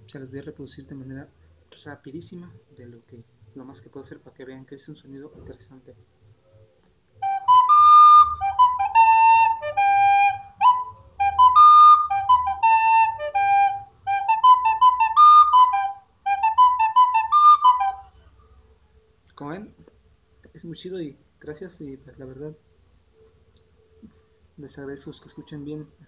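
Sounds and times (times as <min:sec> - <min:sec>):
flute playing fast melody: 0:07.2 - 0:18.1.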